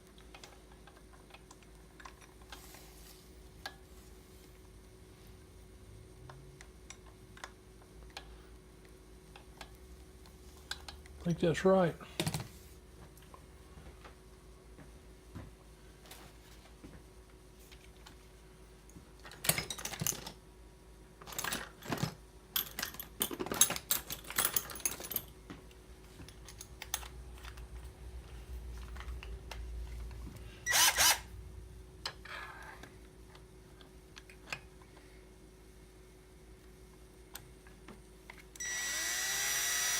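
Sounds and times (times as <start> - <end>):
metal parts and tools clinking: 21.2 - 25.3.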